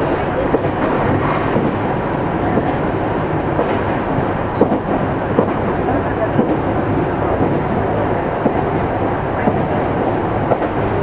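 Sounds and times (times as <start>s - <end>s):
train wheels and motors rumbling: 0.0s - 11.0s
rail-joint clicks: 8.3s - 10.9s.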